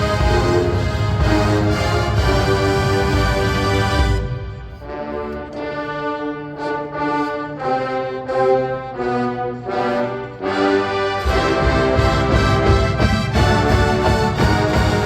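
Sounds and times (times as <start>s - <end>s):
marching band with low drums: 0.0s - 5.4s, 10.7s - 15.0s
brass section playing held chords: 0.0s - 15.0s.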